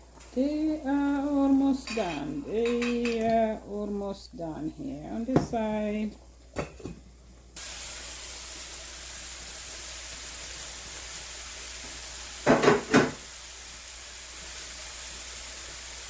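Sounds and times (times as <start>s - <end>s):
food sizzling in a pan: 0.0s - 16.0s
cookware knocks: 12.5s - 13.2s.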